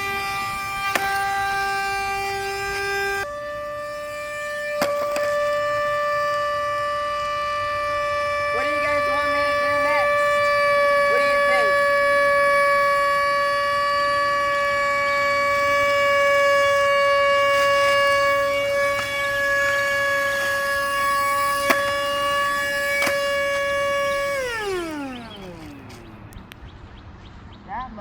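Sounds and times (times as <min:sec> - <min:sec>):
stick vacuum motor whining: 0:00.0 - 0:26.9
sharp clicks: 0:09.9 - 0:26.7.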